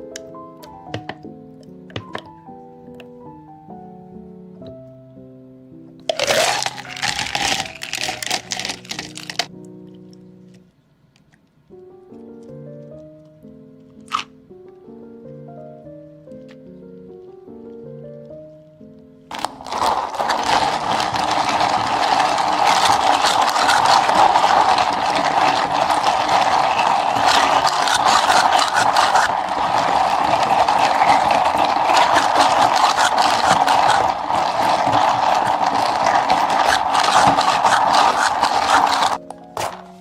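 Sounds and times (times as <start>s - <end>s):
countertop blender running: 19.3s - 39.2s.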